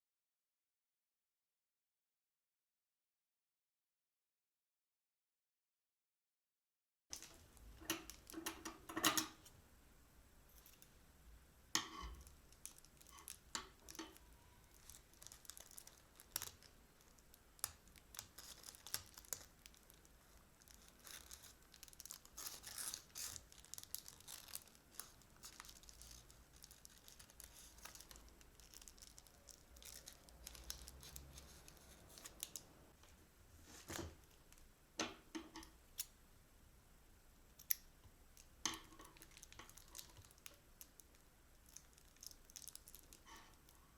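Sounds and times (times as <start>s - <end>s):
plastic bags crinkling: 7.1s - 8.4s, 12.1s - 32.8s, 38.4s - 43.8s.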